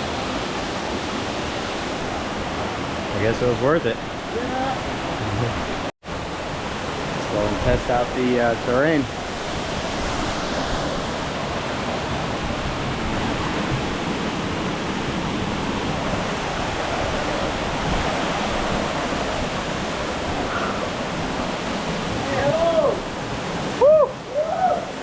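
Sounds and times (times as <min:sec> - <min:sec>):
waterfall rushing: 0:00.0 - 0:25.0.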